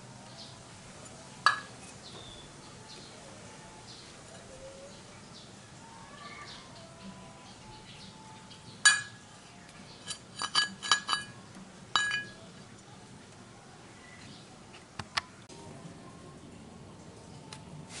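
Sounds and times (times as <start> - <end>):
metal tools clinking: 8.8 - 9.2, 10.0 - 12.4.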